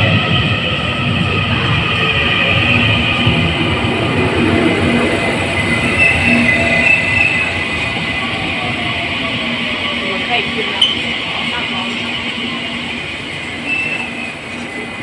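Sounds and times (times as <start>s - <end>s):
train wheels rumbling on rail: 0.0s - 15.0s
high wheel squeal: 2.4s - 11.3s, 12.0s - 15.0s.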